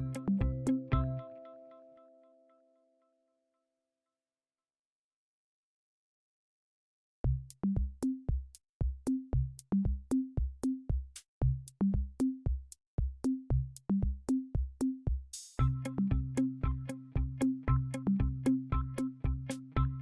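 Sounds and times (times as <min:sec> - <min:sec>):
electronic drum-machine music: 0:00.0 - 0:01.4, 0:15.6 - 0:20.0.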